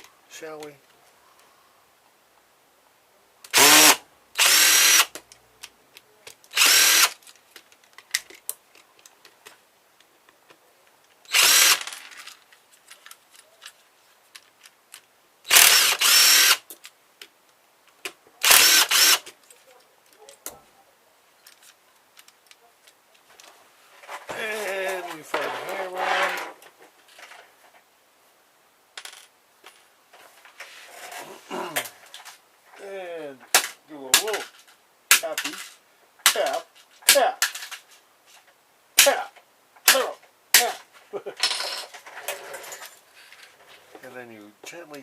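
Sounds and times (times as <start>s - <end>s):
cordless drill motor whine: 3.6s - 5.1s, 6.6s - 7.1s, 11.3s - 11.8s, 15.5s - 16.6s, 18.4s - 19.2s
clicks and taps of handled parts: 21.4s - 23.5s.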